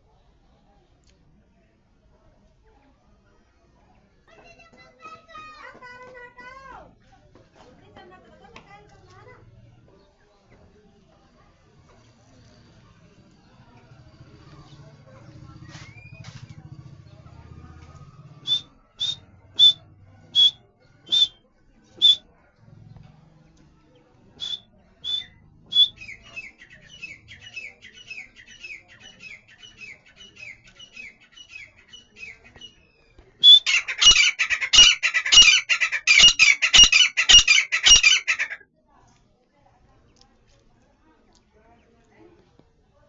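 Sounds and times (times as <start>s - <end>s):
bird chattering run: 18.4s - 21.4s, 22.0s - 22.2s, 24.4s - 38.6s.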